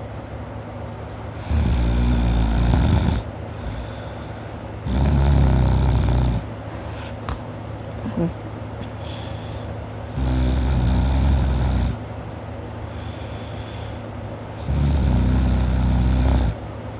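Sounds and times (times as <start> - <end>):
person snoring: 1.4 - 6.4, 10.1 - 12.0, 14.6 - 16.6.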